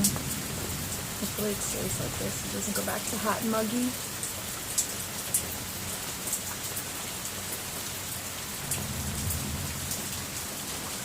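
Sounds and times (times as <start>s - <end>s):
distant thunder rumble: 0.0s - 3.4s, 8.6s - 10.4s
heavy rain falling: 0.0s - 11.0s.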